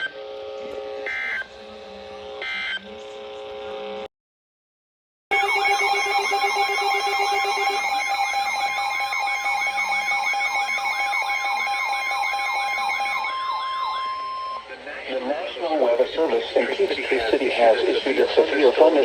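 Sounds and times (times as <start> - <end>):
warbling alert siren: 1.0 - 1.5, 5.3 - 14.7
steady beeping tones: 5.3 - 14.7.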